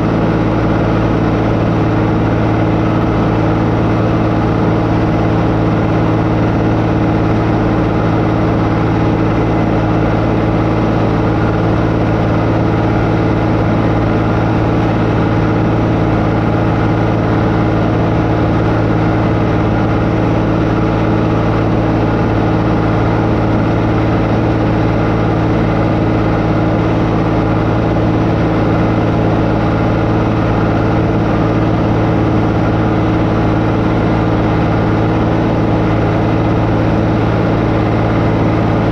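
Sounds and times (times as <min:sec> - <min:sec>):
tractor engine droning: 0:00.0 - 0:38.9.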